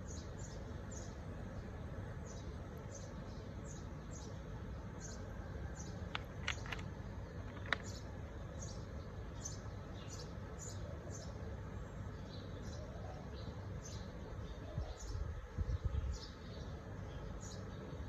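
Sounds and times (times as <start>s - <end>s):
small bird chirping: 2.2s - 18.0s
sharp clicks: 6.0s - 8.0s.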